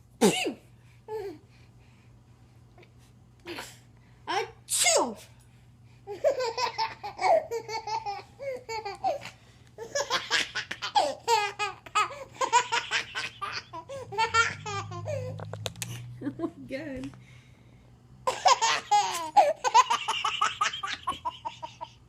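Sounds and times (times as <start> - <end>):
baby giggling: 6.1 - 15.4, 18.3 - 22.0.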